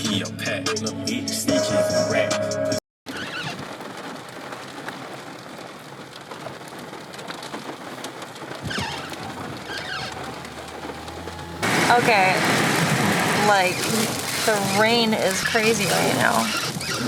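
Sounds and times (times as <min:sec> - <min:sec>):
short falling squeaks: 0:03.1 - 0:03.8, 0:08.6 - 0:11.6, 0:16.4 - 0:17.0
heavy rain falling: 0:03.1 - 0:17.0.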